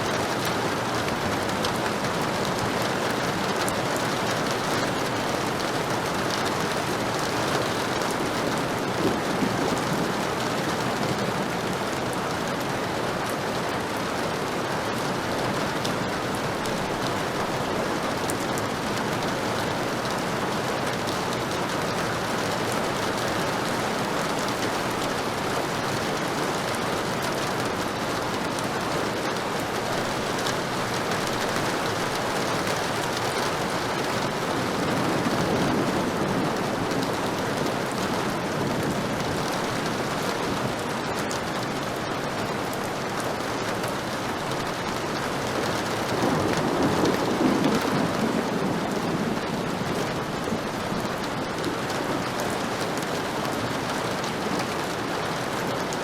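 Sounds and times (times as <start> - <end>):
heavy rain falling: 0.0 - 56.0
distant thunder rolling: 7.8 - 11.6, 33.2 - 40.6, 45.9 - 51.6.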